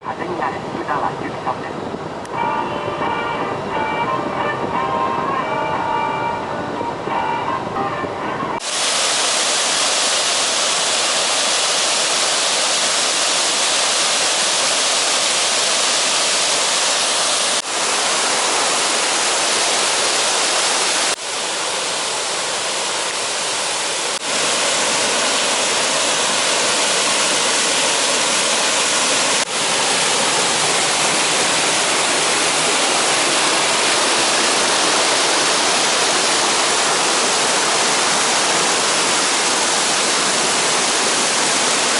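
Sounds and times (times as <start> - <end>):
falling water rushing: 8.6 - 41.9.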